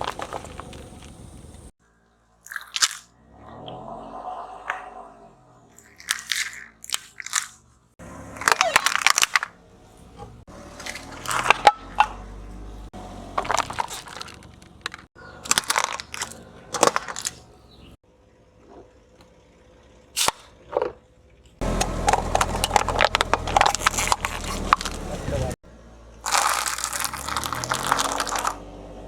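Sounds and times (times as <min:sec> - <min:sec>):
objects crunching under tyre: 0:00.0 - 0:01.7, 0:02.4 - 0:05.1, 0:05.7 - 0:18.0, 0:20.2 - 0:25.6, 0:26.2 - 0:28.8.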